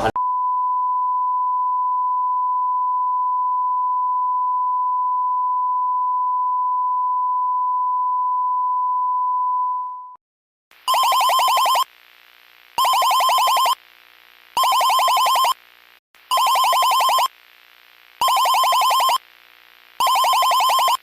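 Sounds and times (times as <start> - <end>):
steady pure tone beep: 0.2 - 10.1.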